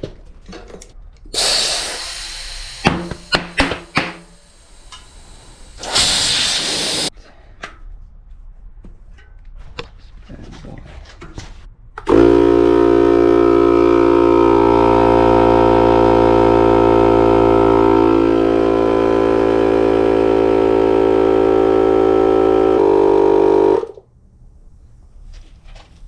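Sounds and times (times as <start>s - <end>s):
air compressor motor humming: 1.4s - 7.1s, 12.1s - 24.0s.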